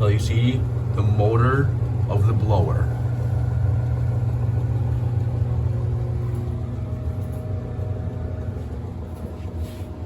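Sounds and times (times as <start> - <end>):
furnace blower fan humming: 0.0 - 10.0.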